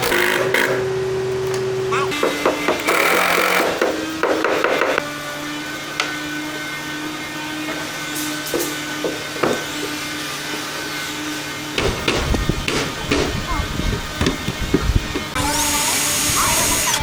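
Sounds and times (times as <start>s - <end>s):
sharp knocks on wood: 11.8s - 13.3s.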